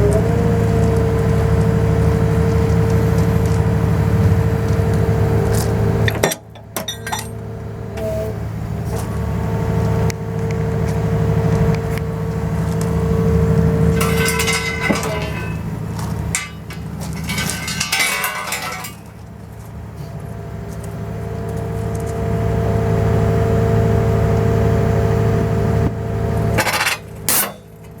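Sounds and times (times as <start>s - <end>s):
hydraulic whine: 0.0s - 18.0s
engine hum: 0.0s - 28.0s
metallic clinking and rattling: 14.0s - 19.2s.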